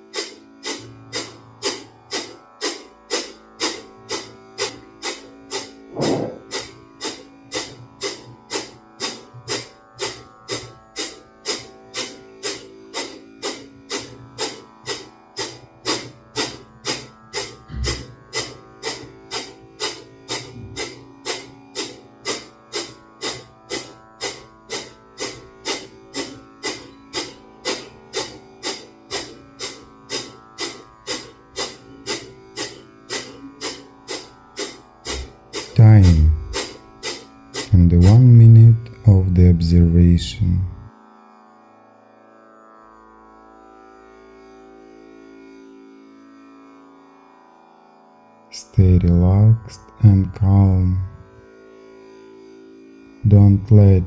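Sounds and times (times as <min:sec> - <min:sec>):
soft music with plucked strings: 0:00.0 - 0:39.6.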